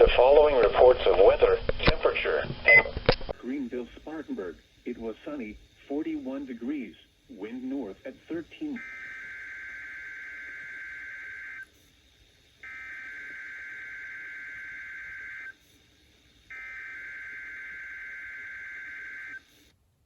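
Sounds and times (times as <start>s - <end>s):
buzzing digital data tones: 5.9s - 11.9s, 12.6s - 19.6s.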